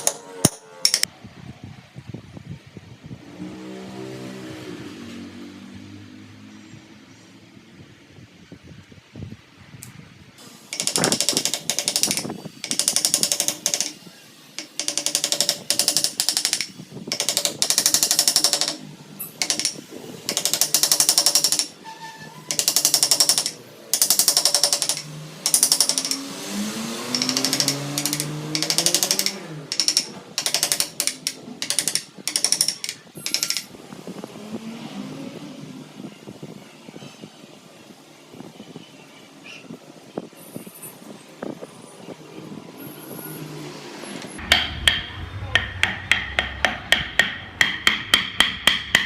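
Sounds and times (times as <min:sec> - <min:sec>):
power carving tool cutting wood: 0:22.5 - 0:33.6.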